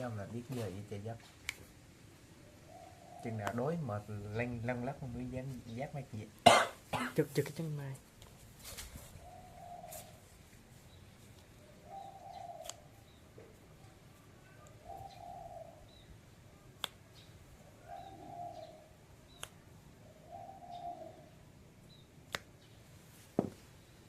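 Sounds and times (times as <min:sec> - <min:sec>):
bird cooing: 0:02.4 - 0:03.9, 0:09.2 - 0:10.2, 0:11.6 - 0:13.5, 0:14.4 - 0:16.1, 0:17.7 - 0:19.0, 0:20.0 - 0:21.5
sharp clicks: 0:19.3 - 0:19.6.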